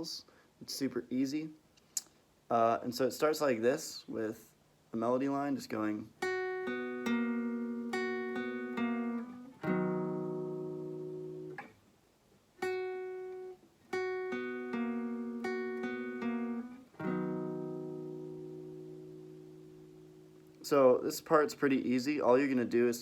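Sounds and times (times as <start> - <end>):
guitar melody and chords: 6.2 - 11.8, 12.6 - 23.0.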